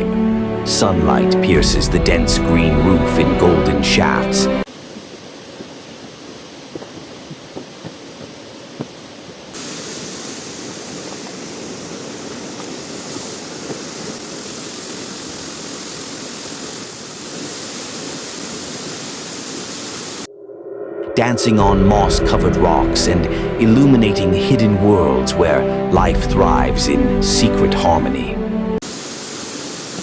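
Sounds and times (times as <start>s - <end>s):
waterfall rushing: 4.7s - 20.3s, 28.8s - 30.0s.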